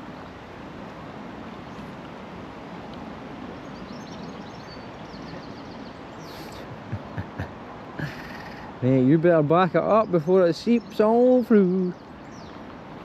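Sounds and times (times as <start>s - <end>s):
river water flowing: 0.0s - 13.0s
small bird chirps: 3.6s - 7.2s, 8.0s - 8.8s.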